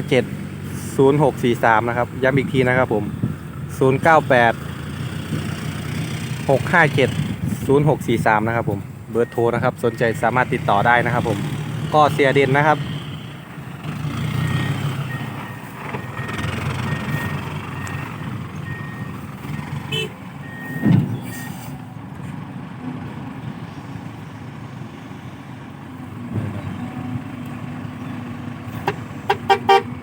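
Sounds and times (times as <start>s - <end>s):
diesel engine running: 0.0s - 30.0s
truck backup alarm beeping: 9.1s - 13.4s, 14.4s - 22.0s.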